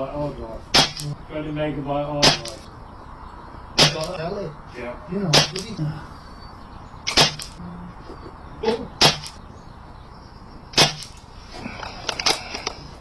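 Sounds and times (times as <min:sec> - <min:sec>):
air rifle shots: 0:00.7 - 0:01.2, 0:02.2 - 0:02.7, 0:03.8 - 0:04.3, 0:05.3 - 0:05.8, 0:07.0 - 0:07.6, 0:09.0 - 0:09.4, 0:10.7 - 0:11.3.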